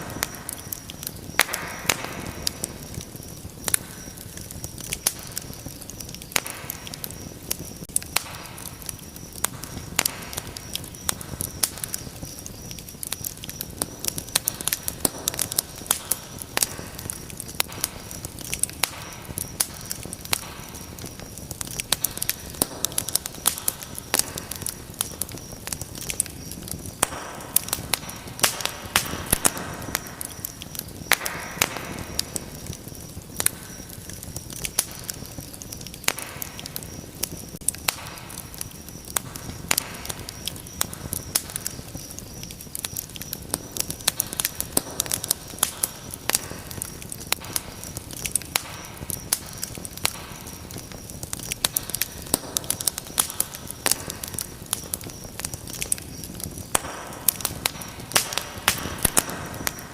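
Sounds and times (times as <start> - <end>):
hiss of burning: 0.0 - 59.9
sharp pops and snaps: 0.0 - 59.9
wood fire crackling: 0.0 - 59.9.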